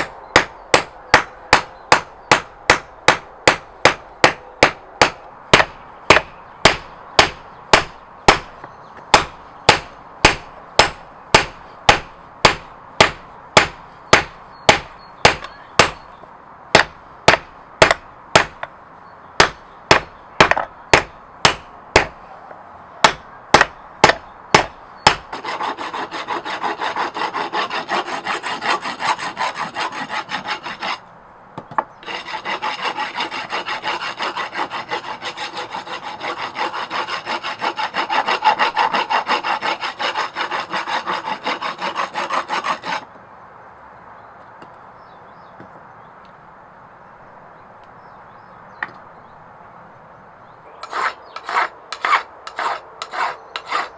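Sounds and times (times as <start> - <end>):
hand tool rasping across steel: 25.3 - 31.0, 32.0 - 43.0, 50.8 - 53.9.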